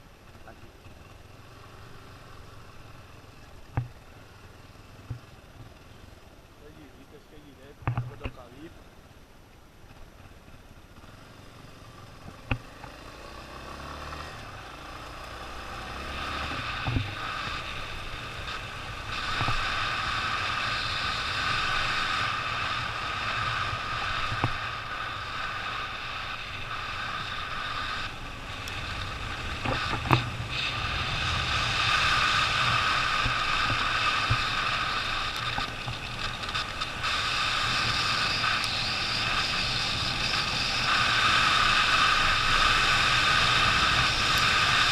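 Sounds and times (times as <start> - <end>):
motorcycle engine: 9.9 - 44.9.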